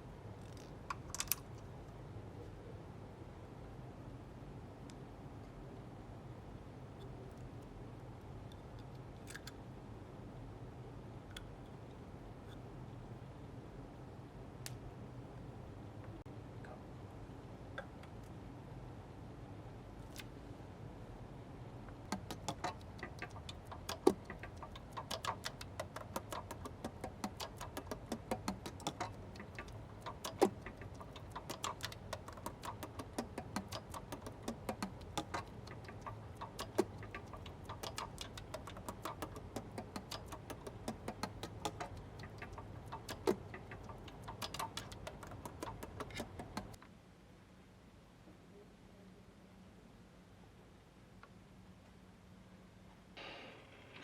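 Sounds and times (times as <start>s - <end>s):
saxophone parts clicking: 22.1s - 46.8s.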